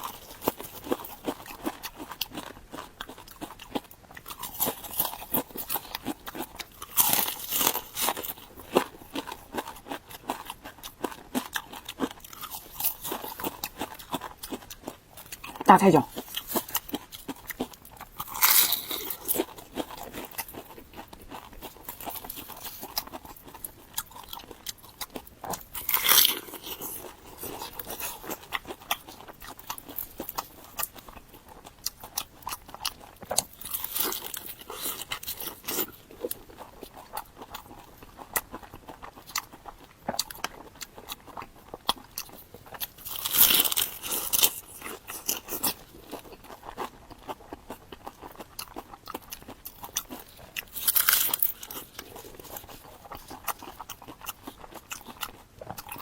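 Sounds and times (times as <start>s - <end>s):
chewing: 0.0s - 56.0s
crunching bites into pepper: 18.2s - 19.5s.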